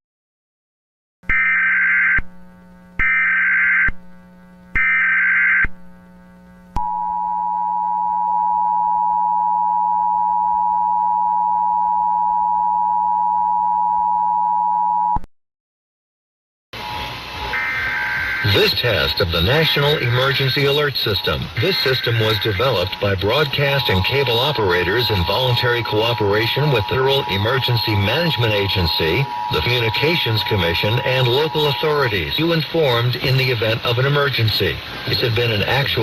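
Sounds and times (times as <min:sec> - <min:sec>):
two-tone attention signal: 0:16.8 - 0:32.6
digital data bursts: 0:16.8 - 0:36.0.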